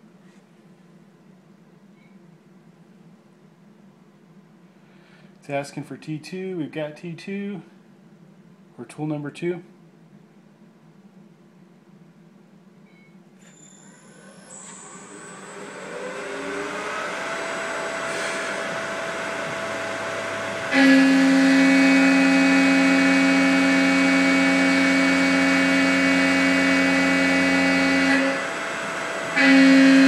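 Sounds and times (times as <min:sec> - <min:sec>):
milling spindle whine: 0:13.5 - 0:30.0
end mill cutting metal: 0:14.1 - 0:30.0.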